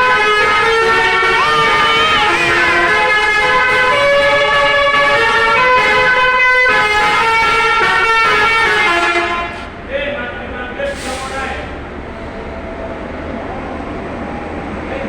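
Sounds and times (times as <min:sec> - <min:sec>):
bus horns playing a tune: 0:00.0 - 0:09.8.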